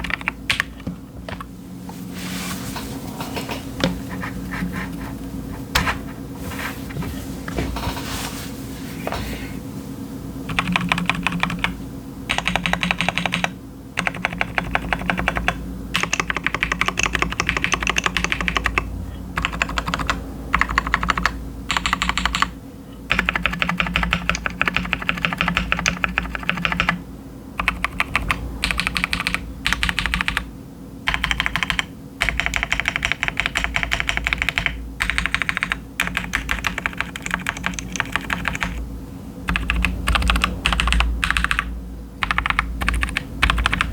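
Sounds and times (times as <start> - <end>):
typing on mechanical keyboard: 0.0 - 1.5, 10.5 - 22.5, 23.1 - 27.0, 27.6 - 30.5, 31.1 - 38.8, 39.5 - 43.9.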